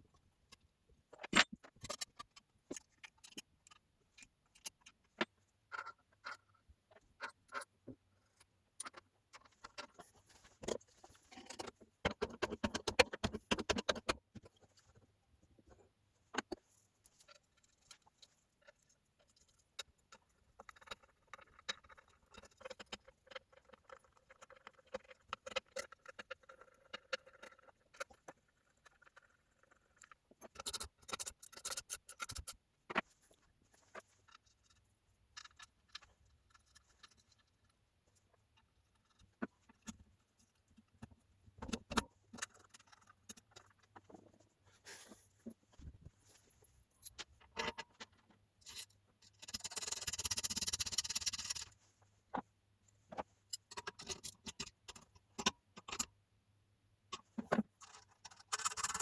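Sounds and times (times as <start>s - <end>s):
small metal parts clicking and rattling: 1.1s - 7.7s, 16.3s - 44.4s, 47.0s - 51.8s, 53.5s - 56.1s, 57.1s - 59.0s.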